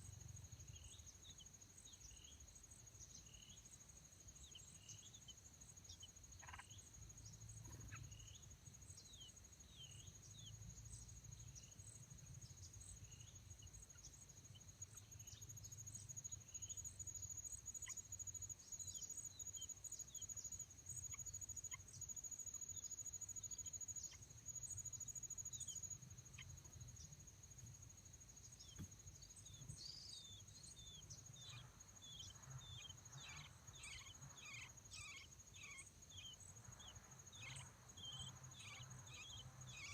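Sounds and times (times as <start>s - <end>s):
insect trilling: 6.2s - 6.8s, 29.5s - 39.9s.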